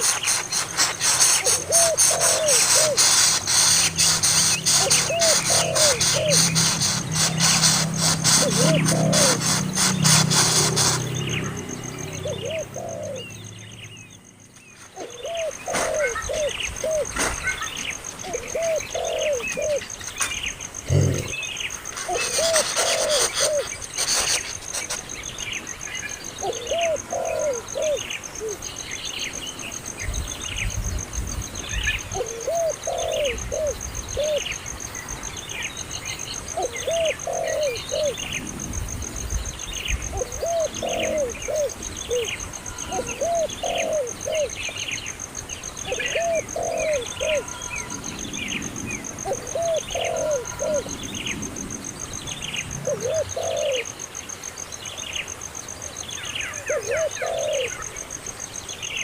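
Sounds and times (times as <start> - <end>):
dove cooing: 0.0 - 11.0, 12.0 - 13.4, 15.0 - 17.3, 18.2 - 19.9, 20.8 - 21.4, 22.0 - 24.9, 26.4 - 28.6, 32.1 - 34.6, 36.5 - 38.4, 40.0 - 44.6, 45.9 - 48.0, 49.2 - 51.0, 52.8 - 53.9, 56.6 - 57.9
small birds chirping: 0.0 - 59.0.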